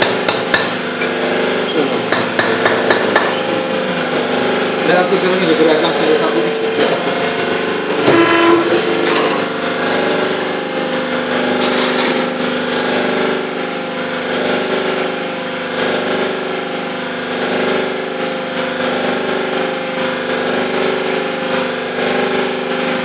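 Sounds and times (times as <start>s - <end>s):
electric motor humming: 0.0s - 17.7s.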